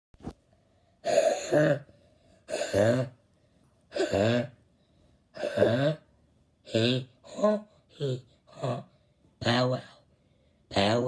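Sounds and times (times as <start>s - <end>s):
person making silly vocal noises: 2.5s - 3.2s, 3.9s - 4.6s, 5.4s - 9.7s.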